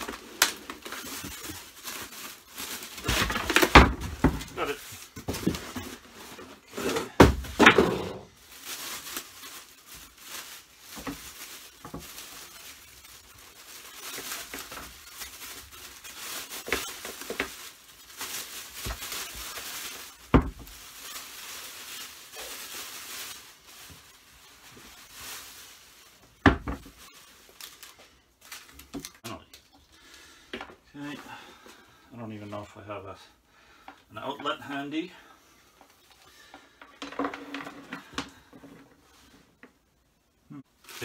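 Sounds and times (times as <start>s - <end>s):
packaging rustling and scraping: 0.0s - 29.2s, 35.9s - 39.6s, 40.7s - 41.0s
knocks and thuds of parts moved: 3.0s - 8.3s, 26.4s - 27.0s, 36.6s - 39.0s.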